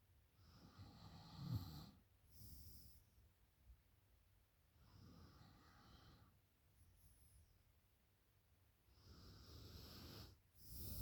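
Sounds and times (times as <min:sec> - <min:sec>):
woman breathing: 0:10.6 - 0:11.0.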